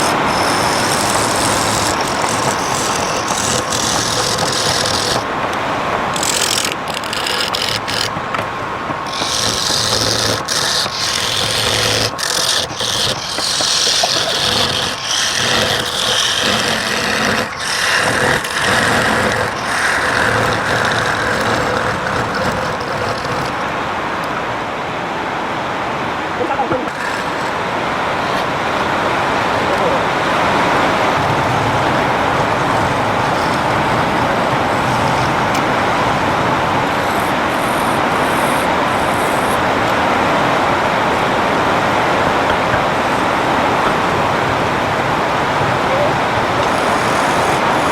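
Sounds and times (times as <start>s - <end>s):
wood lathe tool scraping wood: 0.0s - 23.8s, 26.9s - 28.6s, 30.9s - 40.1s, 46.2s - 47.9s.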